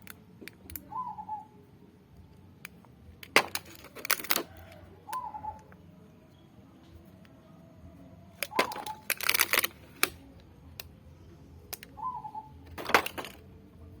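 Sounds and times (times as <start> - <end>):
high chirps or squeaks: 8.4 - 9.6.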